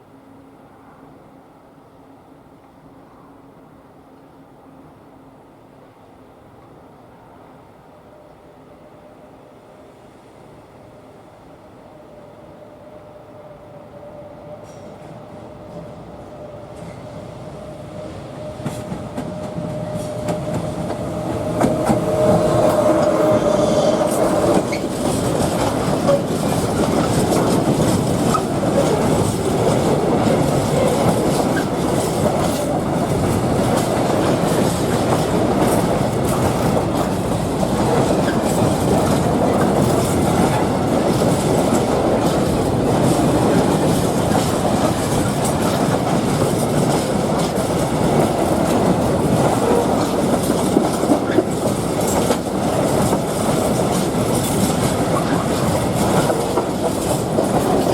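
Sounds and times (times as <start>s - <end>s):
freight train wheels rolling on rails: 14.4s - 57.9s.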